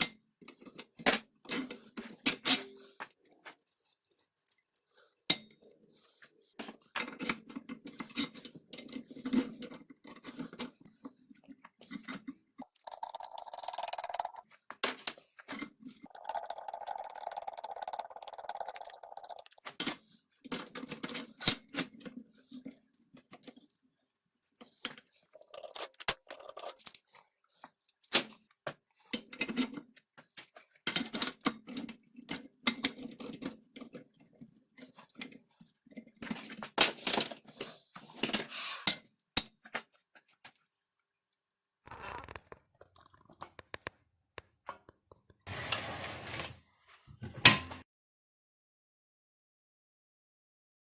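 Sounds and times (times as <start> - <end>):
hard parts clinking and scraping: 0.0 - 3.6, 30.5 - 39.5.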